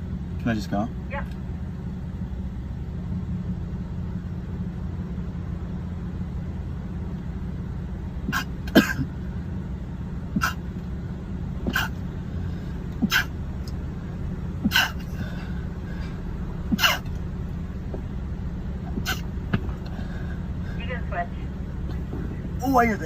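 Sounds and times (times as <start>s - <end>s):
steady low hum: 0.0s - 23.0s
boy sneezing: 10.4s - 10.6s, 11.7s - 12.0s, 14.7s - 15.1s, 16.8s - 17.1s.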